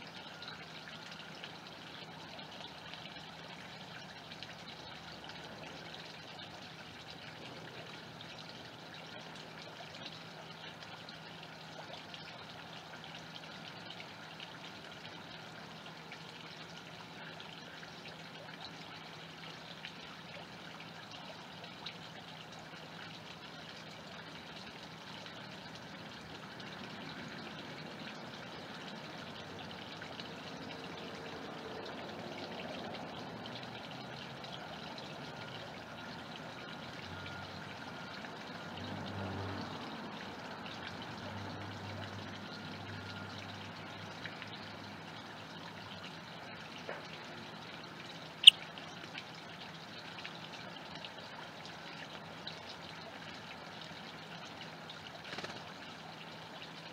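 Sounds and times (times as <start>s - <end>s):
trickle of running water: 0.0s - 56.9s.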